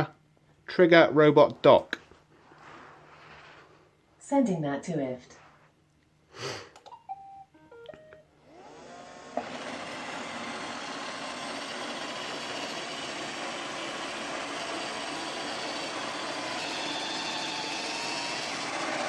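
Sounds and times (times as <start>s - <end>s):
robot vacuum motors whining: 8.4s - 19.0s.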